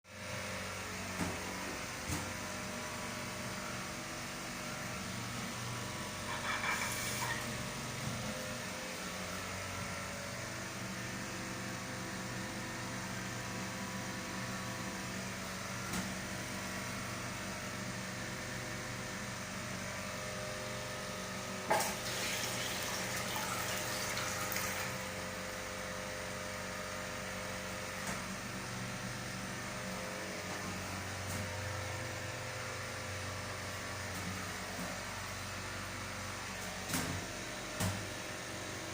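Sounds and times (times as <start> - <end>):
ventilation hum: 0.1 - 38.9
urinal flush rushing water: 21.7 - 25.0.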